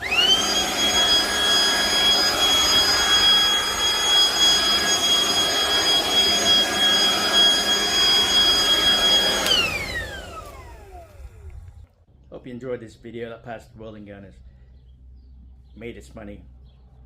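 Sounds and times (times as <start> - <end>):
leaf blower whining: 0.0 - 11.9.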